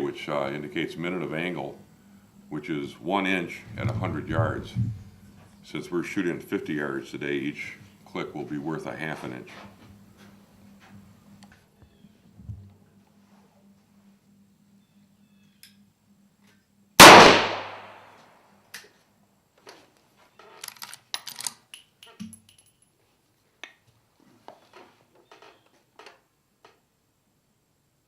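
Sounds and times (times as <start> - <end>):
rifle shot: 17.0 - 18.2.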